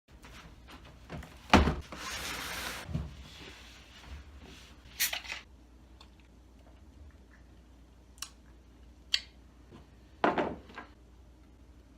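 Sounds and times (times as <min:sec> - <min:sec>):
rubbing or sliding: 0:01.8 - 0:05.0.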